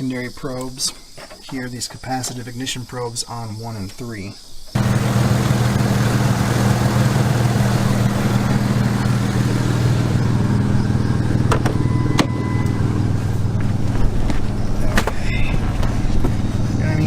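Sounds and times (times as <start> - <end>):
engine idling with misfires: 4.8 - 17.0.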